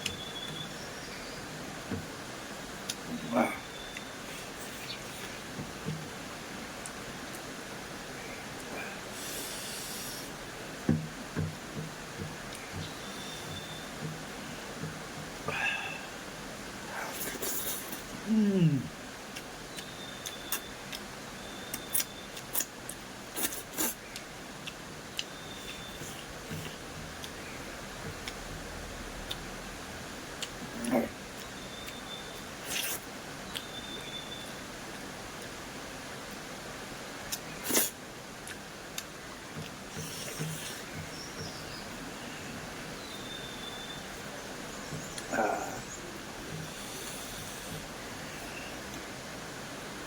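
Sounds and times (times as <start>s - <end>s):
faint high chirps: 0.0s - 1.5s, 3.1s - 5.4s, 12.5s - 14.0s, 19.7s - 22.6s, 25.1s - 26.8s, 30.8s - 34.7s, 39.9s - 48.8s
low background hum: 0.0s - 50.0s
soft eating clicks and crunching: 2.8s - 6.0s, 19.3s - 35.6s, 37.2s - 42.0s
chewing crunches and mouth smacks: 21.7s - 27.4s, 37.3s - 40.8s.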